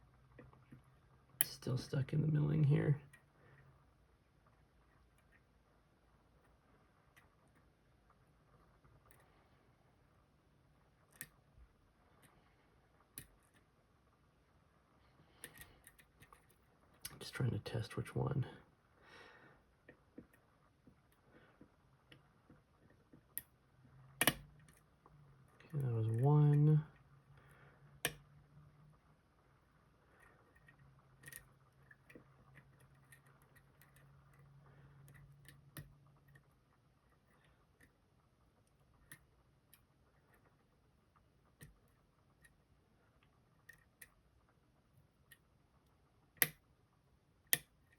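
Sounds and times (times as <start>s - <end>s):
faint low hum: 0.0s - 47.9s
lock pick clicking: 24.2s - 24.8s, 46.4s - 46.6s
lock pick clicking on pins: 24.2s - 24.8s, 30.2s - 34.4s, 46.4s - 46.6s.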